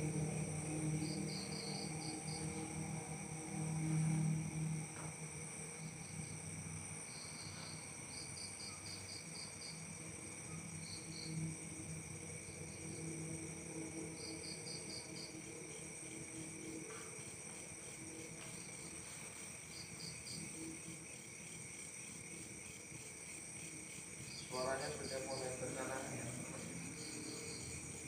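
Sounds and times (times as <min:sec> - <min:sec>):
low hum: 0:00.0 - 0:07.0
insects trilling: 0:00.0 - 0:28.0
quick pulsed insect chirps: 0:00.0 - 0:28.0.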